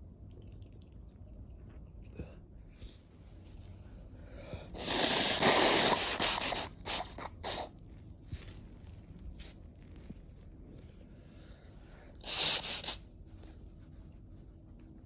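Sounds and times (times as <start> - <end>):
person blowing air through nose: 4.8 - 7.7.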